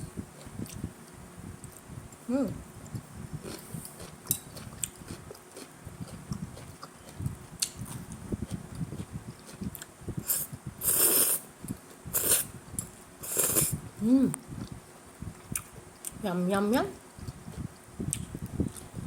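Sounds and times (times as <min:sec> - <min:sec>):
person chewing food: 0:02.9 - 0:12.4, 0:13.2 - 0:13.8.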